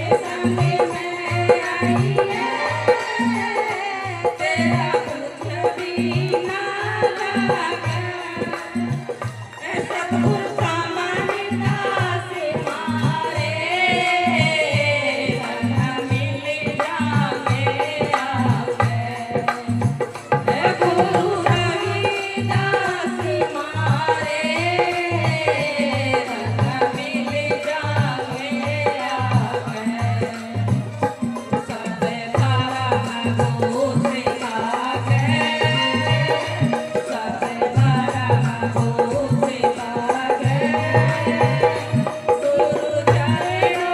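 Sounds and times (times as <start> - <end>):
hand drum rhythm: 0.0 - 43.9
person singing: 20.4 - 43.9.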